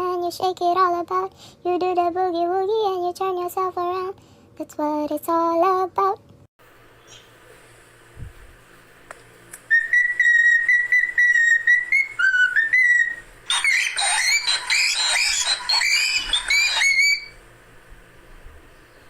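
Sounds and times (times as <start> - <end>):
cockatiel whistling: 9.7 - 17.4.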